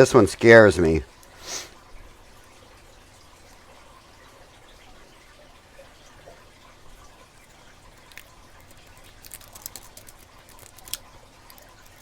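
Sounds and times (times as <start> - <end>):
breathy hiss: 1.3 - 1.8.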